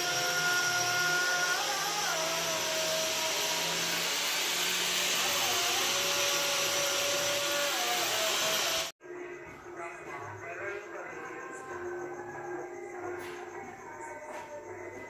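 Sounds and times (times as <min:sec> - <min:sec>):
electric power tool whining: 0:00.0 - 0:09.0
quiet music: 0:09.0 - 0:15.0.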